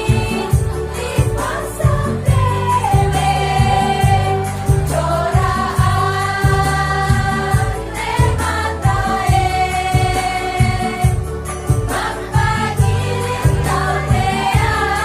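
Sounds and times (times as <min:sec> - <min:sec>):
instrumental accompaniment with beat: 0:00.0 - 0:15.0
women's choir singing: 0:00.0 - 0:15.0.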